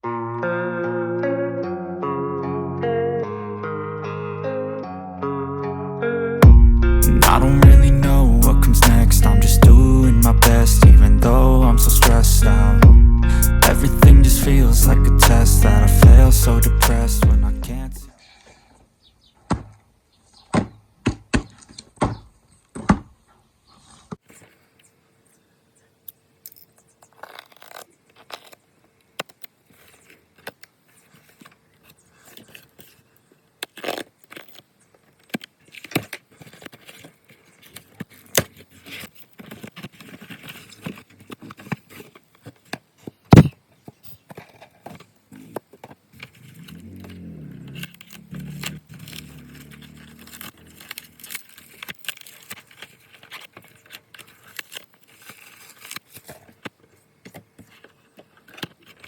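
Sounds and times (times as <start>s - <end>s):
plastic packaging rattling: 47.9s - 56.7s.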